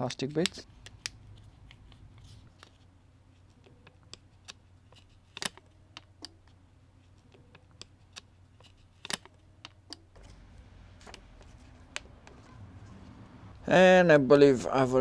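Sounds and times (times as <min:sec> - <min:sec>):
plastic picks clicking: 0:00.0 - 0:02.8, 0:03.5 - 0:11.3.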